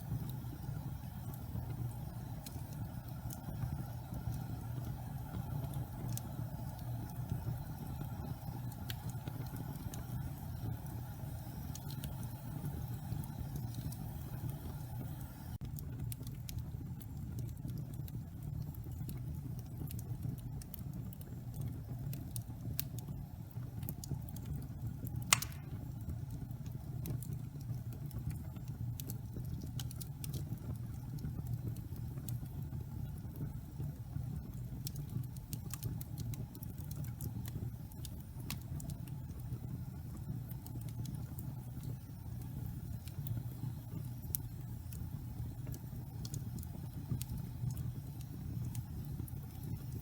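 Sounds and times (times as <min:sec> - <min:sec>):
fireplace fire rumbling and crackling: 0:00.0 - 0:50.0
loud pop from fire: 0:25.3 - 0:25.9.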